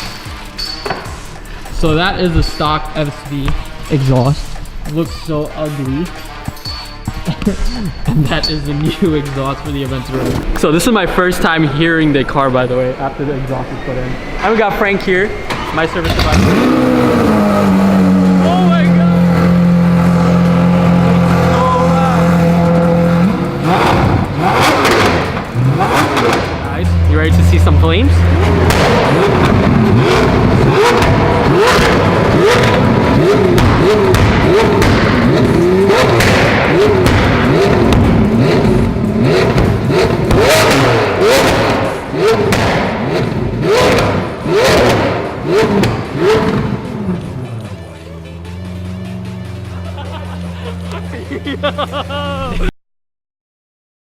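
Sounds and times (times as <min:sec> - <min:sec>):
music: 0:00.0 - 0:41.0, 0:43.7 - 0:52.7
car engine idling and revving: 0:00.0 - 0:52.5
exhaust crackling: 0:01.2 - 0:52.5
exhaust pops and bangs: 0:22.3 - 0:47.4.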